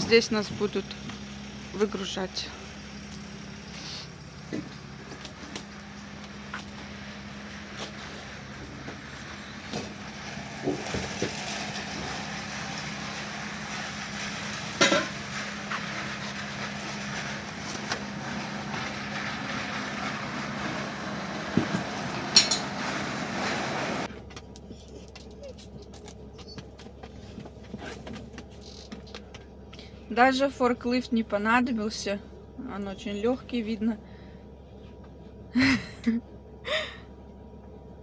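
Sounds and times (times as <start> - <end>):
metallic clanks and knocks: 14.8 - 15.2, 21.5 - 22.9
steady low hum: 24.0 - 38.0.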